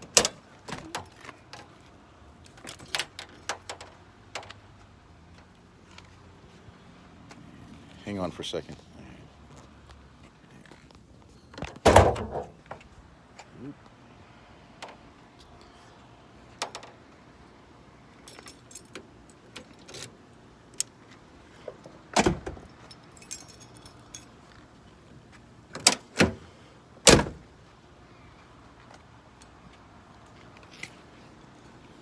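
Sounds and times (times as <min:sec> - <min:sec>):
car keys jingling: 0:02.5 - 0:04.6, 0:18.2 - 0:20.2, 0:21.6 - 0:24.7.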